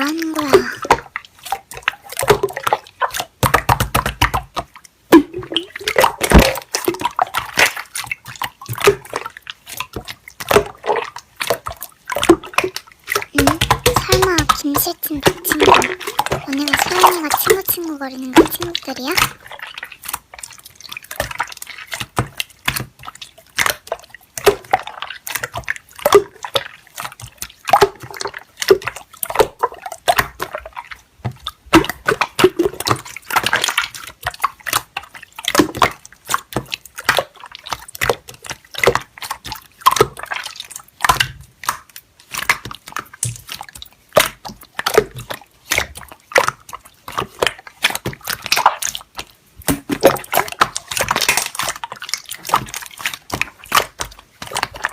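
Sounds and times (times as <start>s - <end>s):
slime squished by hand: 40.8s - 54.9s.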